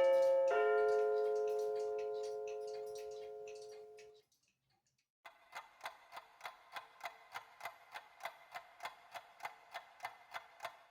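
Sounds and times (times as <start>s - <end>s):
chime tone: 0.0s - 4.0s
clock ticking rapidly: 0.0s - 4.1s, 5.3s - 10.9s.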